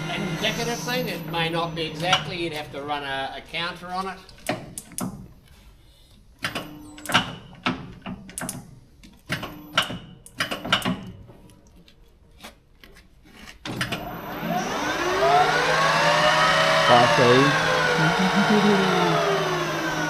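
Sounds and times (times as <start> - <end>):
lathe spindle whining: 0.0 - 3.1, 14.0 - 20.0.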